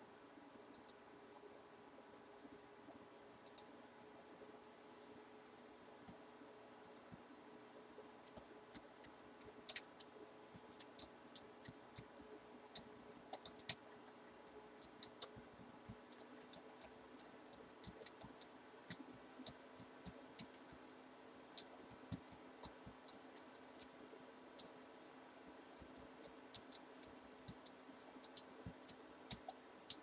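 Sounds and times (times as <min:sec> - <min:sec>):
faint electrical hum: 0:00.0 - 0:30.0
light clicks and ticks: 0:00.7 - 0:01.0, 0:02.9 - 0:03.7, 0:08.1 - 0:24.8, 0:25.4 - 0:30.0.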